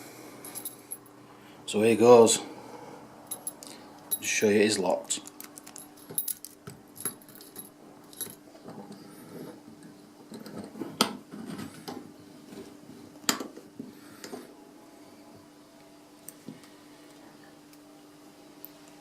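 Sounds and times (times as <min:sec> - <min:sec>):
padlock metal clicks and rattles: 0:05.2 - 0:07.2.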